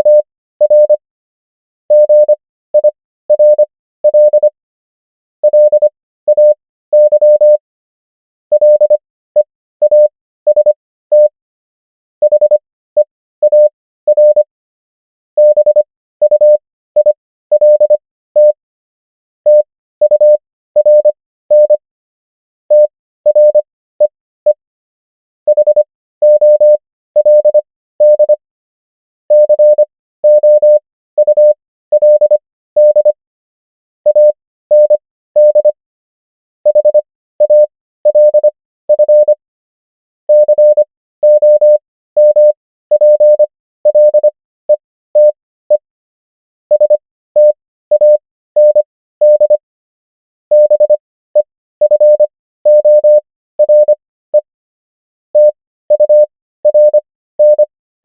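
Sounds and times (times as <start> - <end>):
morse code beeps: 0.0 - 1.0, 1.9 - 4.6, 5.4 - 7.6, 8.5 - 11.4, 12.2 - 14.5, 15.4 - 18.6, 19.5 - 21.8, 22.7 - 24.6, 25.5 - 28.4, 29.3 - 33.2, 34.1 - 35.8, 36.7 - 39.4, 40.3 - 45.8, 46.7 - 49.6, 50.5 - 54.5, 55.4 - 57.7.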